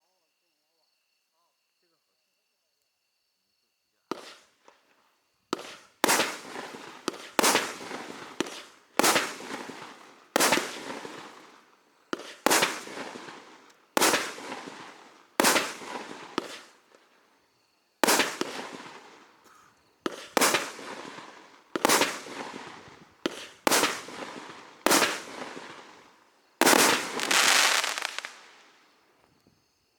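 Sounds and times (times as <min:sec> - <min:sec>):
fireworks bangs: 0:04.1 - 0:04.4, 0:05.5 - 0:17.2, 0:18.0 - 0:29.0.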